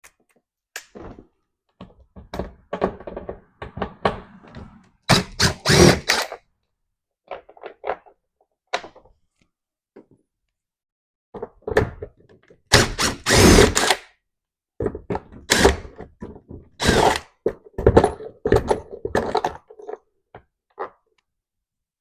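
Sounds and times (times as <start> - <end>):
impact driver whirring: 5.1 - 6.4, 12.7 - 14.0.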